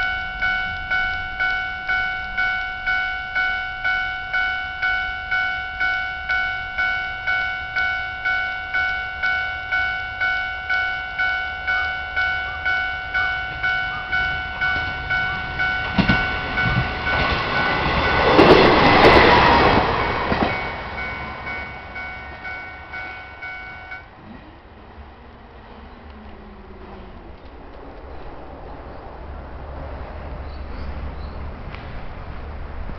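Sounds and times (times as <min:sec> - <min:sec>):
level crossing alarm ringing: 0:00.0 - 0:24.1
train wheels clacking on rails: 0:07.4 - 0:24.0.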